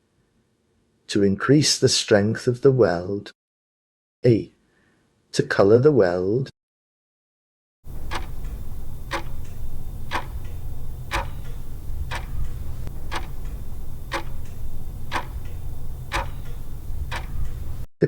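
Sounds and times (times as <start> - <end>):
clock ticking timer: 7.9 - 17.9
low steady hum: 7.9 - 17.9.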